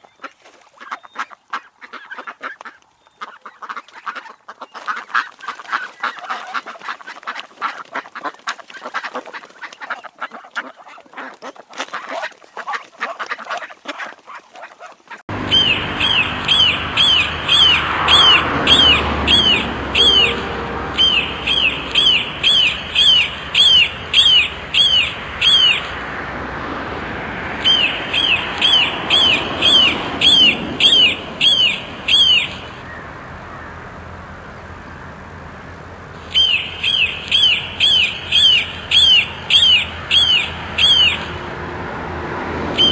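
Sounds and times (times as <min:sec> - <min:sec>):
bird sharp falling whistle: 0:15.3 - 0:26.0, 0:27.6 - 0:33.7, 0:36.2 - 0:41.4
geese or ducks honking: 0:15.3 - 0:42.9.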